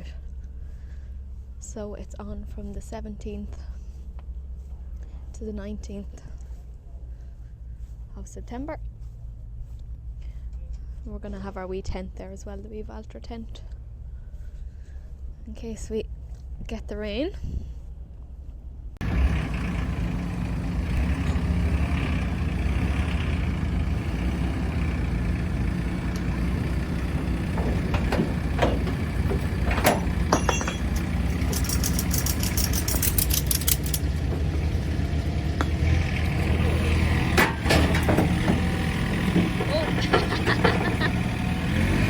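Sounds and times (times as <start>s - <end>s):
heavy vehicle engine idling: 19.0s - 42.0s
metallic clinks and knocks: 25.3s - 34.8s.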